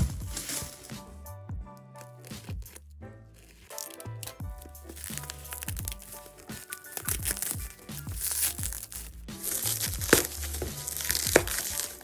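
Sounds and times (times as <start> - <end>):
background music: 0.0 - 12.0
packaging crinkling and rustling: 2.0 - 12.0.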